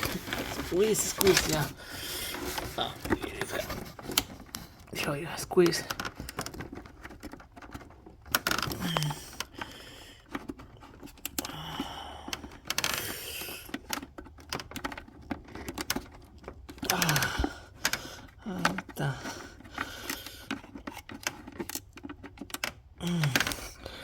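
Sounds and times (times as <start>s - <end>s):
rustling scrape: 0.0s - 4.8s
plastic clips clicking and scraping: 0.0s - 24.0s
low vocal sounds: 23.0s - 24.0s.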